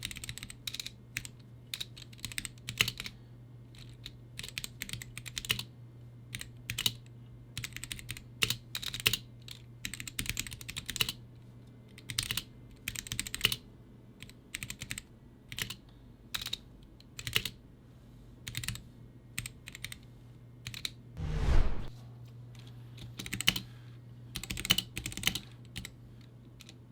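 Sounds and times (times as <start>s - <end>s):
mechanical keyboard typing: 0.0s - 3.1s, 3.8s - 5.7s, 7.6s - 11.2s, 12.0s - 13.6s, 14.2s - 15.8s, 24.4s - 25.9s.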